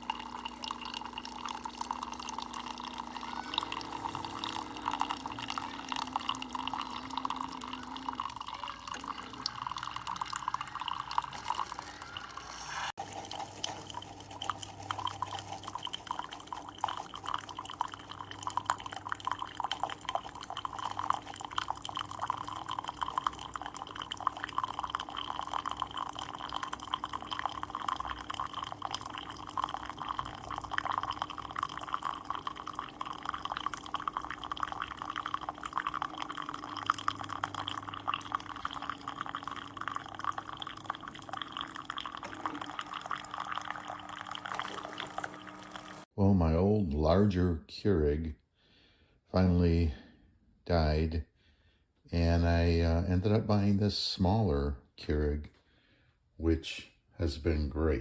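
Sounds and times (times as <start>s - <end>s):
coffee machine humming: 0.0s - 46.1s
coffee streaming into a cup: 0.0s - 46.1s.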